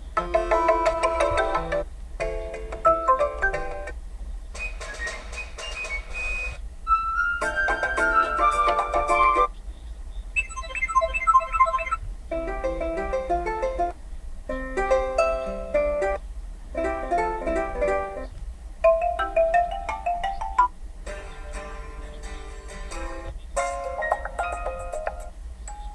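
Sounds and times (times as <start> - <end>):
plucked ringtone melodies: 0.2 - 3.9, 6.9 - 9.5, 10.4 - 13.9, 14.5 - 16.2, 18.8 - 21.8, 23.6 - 25.9.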